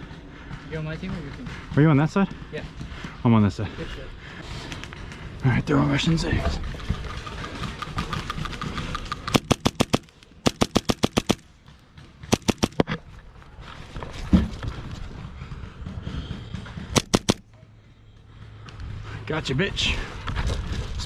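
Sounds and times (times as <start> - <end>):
airsoft gun firing bursts: 8.3 - 11.4, 12.3 - 12.8, 16.9 - 17.4.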